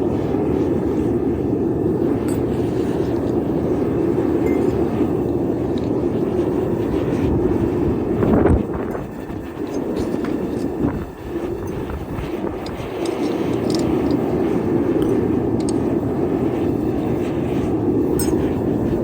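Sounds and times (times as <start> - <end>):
light metallic clinks: 12.6 - 14.2, 15.0 - 15.8, 18.2 - 18.5.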